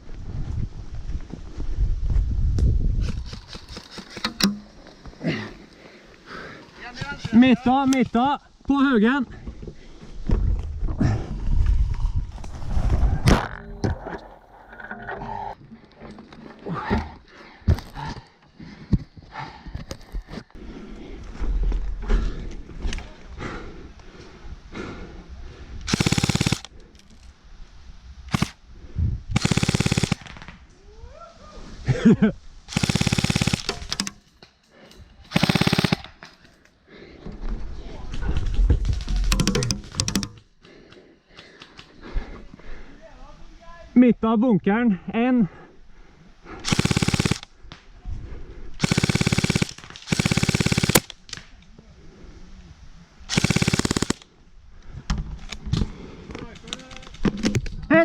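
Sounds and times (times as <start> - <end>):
airsoft gun firing bursts: 25.9 - 26.7, 28.3 - 28.6, 29.4 - 30.4, 32.7 - 34.2, 35.3 - 36.3, 46.6 - 47.5, 48.8 - 51.2, 53.3 - 54.3
person shouting: 30.8 - 31.6.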